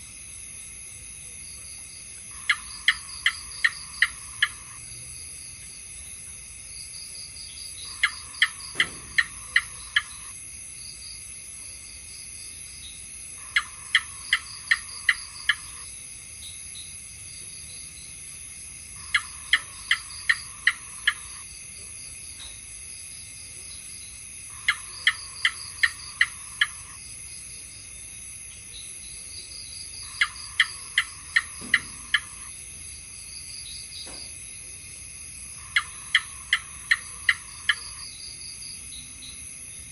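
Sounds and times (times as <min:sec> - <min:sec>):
gecko chirping: 0:02.2 - 0:04.9, 0:07.6 - 0:10.4, 0:13.4 - 0:15.9, 0:19.0 - 0:21.4, 0:24.5 - 0:27.0, 0:30.0 - 0:32.5, 0:35.6 - 0:38.2.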